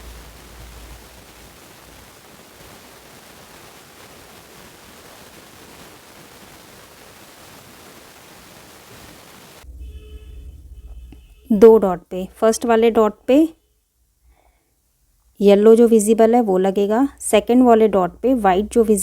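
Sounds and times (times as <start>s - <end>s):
low hum: 0.0s - 1.9s, 9.6s - 13.4s
steady hiss: 0.0s - 11.3s.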